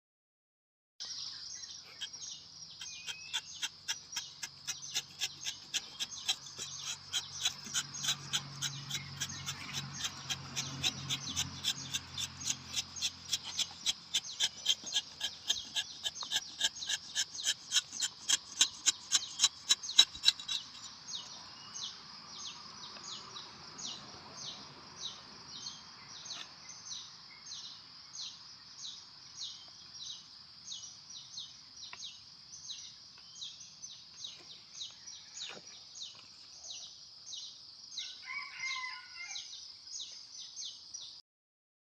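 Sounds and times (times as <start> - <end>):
rapid high-pitched chirping: 2.0 - 20.9.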